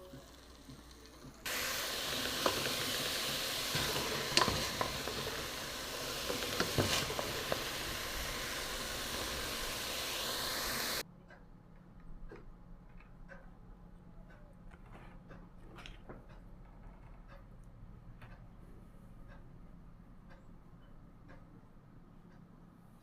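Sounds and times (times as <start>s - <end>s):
food sizzling in a pan: 0.0s - 11.0s
utensil clicking on pan: 1.5s - 11.0s.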